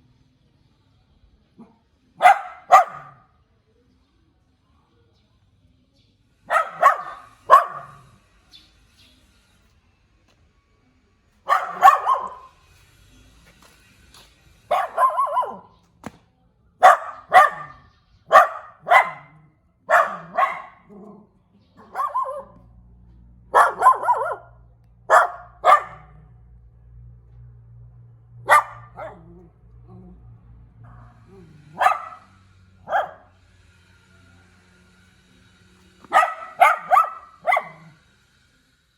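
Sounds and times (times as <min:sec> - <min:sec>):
small dog barking: 0:01.6 - 0:03.3, 0:06.5 - 0:08.2, 0:11.5 - 0:12.6, 0:14.7 - 0:15.8, 0:16.8 - 0:22.7, 0:23.5 - 0:26.4, 0:28.4 - 0:30.2, 0:30.9 - 0:33.4, 0:36.0 - 0:38.0.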